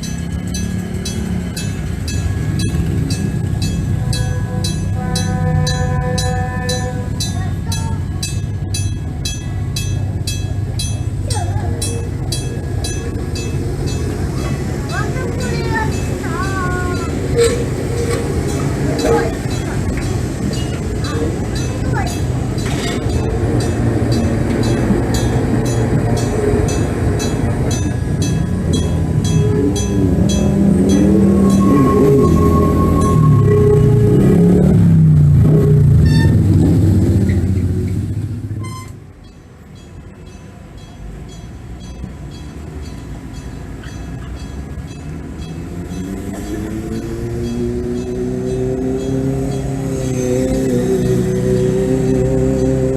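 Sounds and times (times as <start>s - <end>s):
train rumbling past: 0.0s - 52.9s
level crossing bell ringing: 18.4s - 34.8s.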